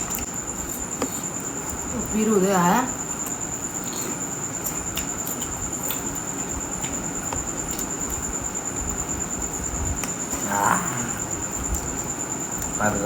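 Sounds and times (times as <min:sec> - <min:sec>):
cricket trill: 0:00.0 - 0:13.0
soft eating clicks: 0:03.0 - 0:08.4, 0:11.6 - 0:13.0.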